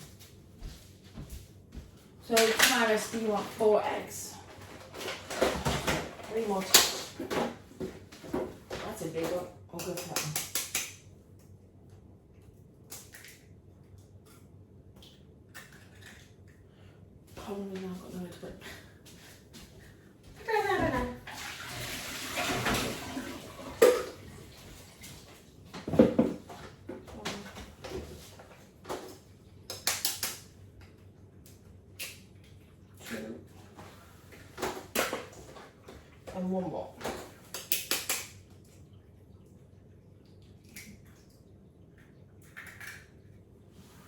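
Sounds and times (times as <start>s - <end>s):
water running: 20.4s - 28.8s
egg squishing and dripping: 37.5s - 43.7s.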